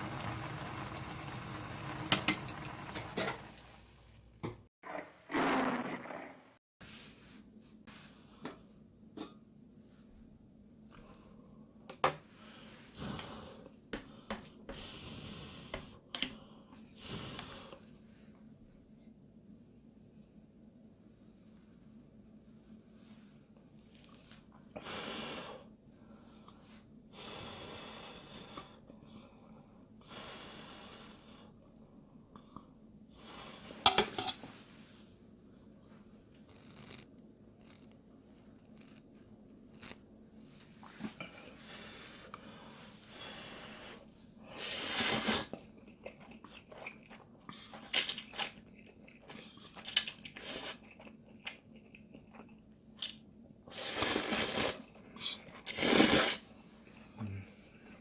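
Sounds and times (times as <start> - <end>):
noodles being slurped: 4.8 - 6.4, 44.6 - 52.3, 53.7 - 56.5.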